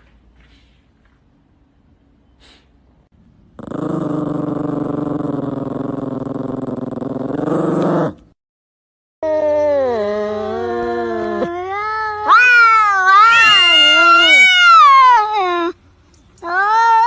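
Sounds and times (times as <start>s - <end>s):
dog growling: 3.6s - 8.2s.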